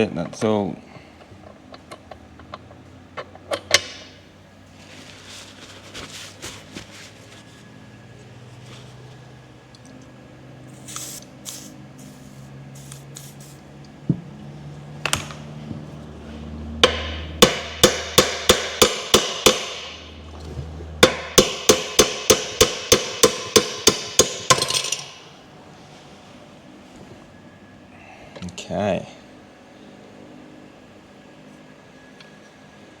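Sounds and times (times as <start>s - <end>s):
hammer striking metal: 16.8s - 20.2s, 21.0s - 25.3s.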